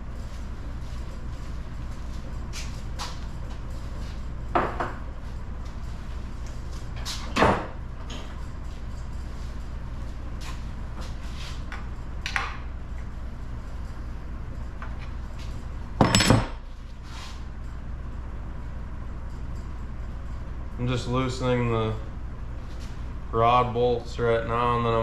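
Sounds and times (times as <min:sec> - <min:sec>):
low shop hum: 0:00.0 - 0:25.0
metal engine parts clinking: 0:16.0 - 0:16.6.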